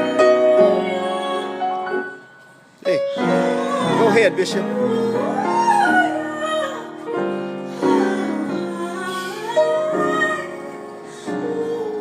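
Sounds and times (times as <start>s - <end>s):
sustained piano chords: 0.0s - 12.0s
person singing slow melody: 2.8s - 12.0s.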